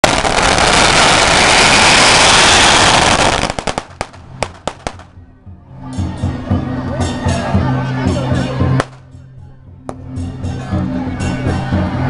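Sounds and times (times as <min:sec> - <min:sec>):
firecrackers crackling and banging: 0:00.0 - 0:05.2, 0:08.8 - 0:09.0.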